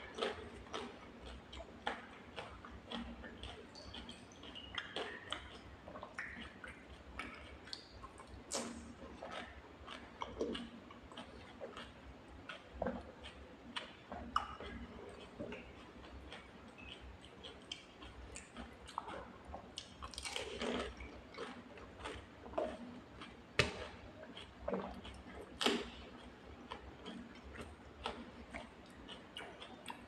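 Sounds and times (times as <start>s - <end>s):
crunchy snack being chewed: 0.0s - 30.0s.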